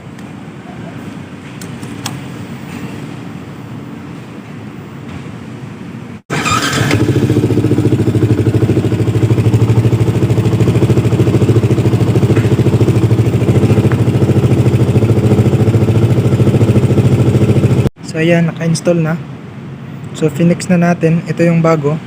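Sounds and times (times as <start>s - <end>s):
motorcycle engine idling: 6.4s - 17.9s.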